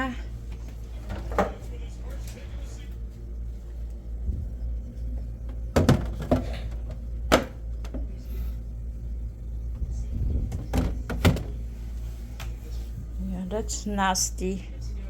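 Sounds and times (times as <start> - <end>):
steady low hum: 0.0 - 15.0
objects knocking and clunking: 5.5 - 8.2, 10.3 - 11.6.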